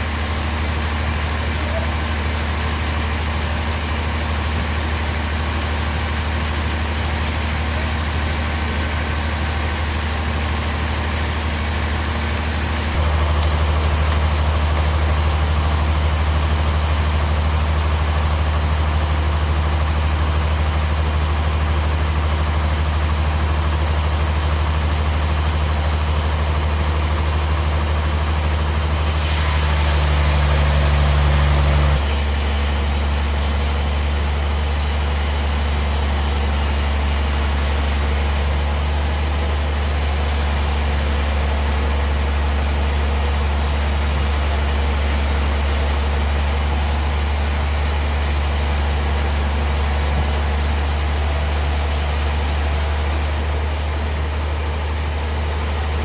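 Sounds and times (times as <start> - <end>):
bandsaw sawmill humming: 0.0 - 56.0
hiss: 28.7 - 56.0.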